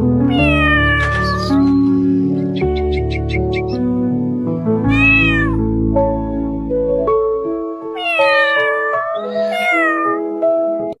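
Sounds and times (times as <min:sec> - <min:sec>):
background music with held notes: 0:00.0 - 0:11.0
kitten meowing: 0:00.3 - 0:01.6, 0:04.9 - 0:05.6, 0:07.9 - 0:10.4.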